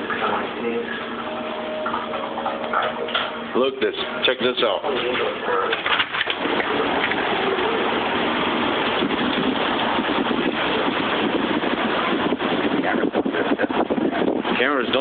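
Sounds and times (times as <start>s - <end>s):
wind rushing: 6.4s - 15.0s.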